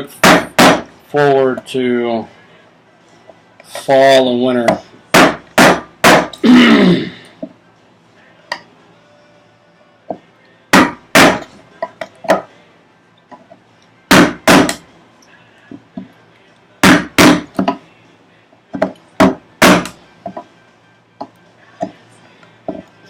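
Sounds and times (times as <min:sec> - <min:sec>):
mallet striking a chisel: 0:10.8 - 0:12.5, 0:14.1 - 0:14.8, 0:16.8 - 0:17.8, 0:18.8 - 0:20.4.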